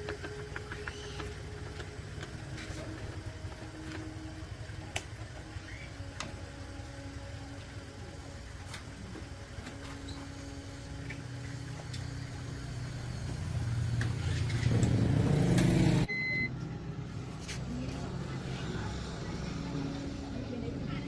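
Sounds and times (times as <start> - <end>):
motor humming: 0.0 - 16.1
short high beep: 16.1 - 16.5.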